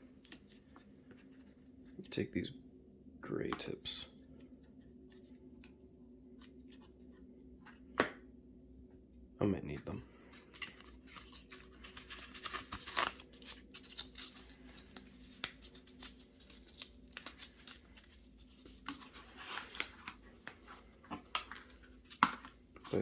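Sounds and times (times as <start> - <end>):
packaging scrapes and rustles: 10.3 - 20.9.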